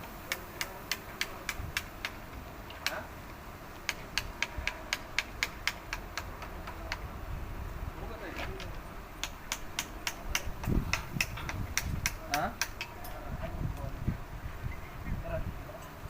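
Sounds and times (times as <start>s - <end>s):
sharp metallic clicks: 0.3s - 3.0s, 3.8s - 7.0s, 8.4s - 13.2s.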